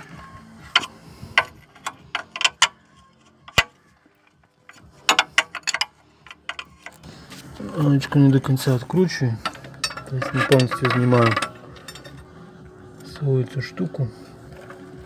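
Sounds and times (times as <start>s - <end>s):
wrench metal clicks: 0.7s - 7.0s.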